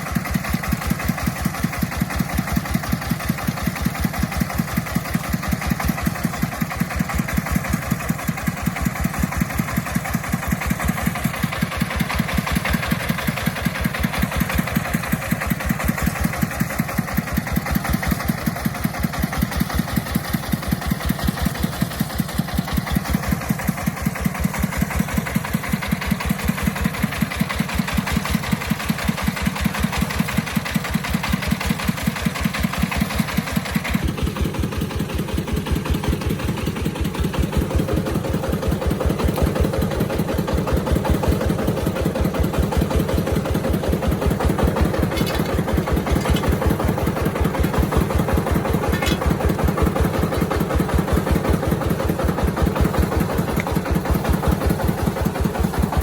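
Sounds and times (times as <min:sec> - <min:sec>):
vehicle engine running: 0:00.0 - 0:56.0.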